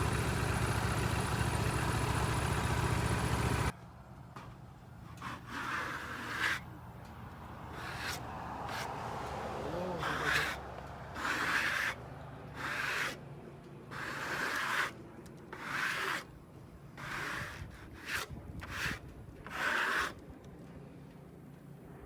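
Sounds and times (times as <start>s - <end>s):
rubbing strokes on sawn wood: 7.7s - 9.0s, 9.6s - 10.6s, 11.2s - 13.2s, 13.9s - 16.3s, 17.0s - 20.2s.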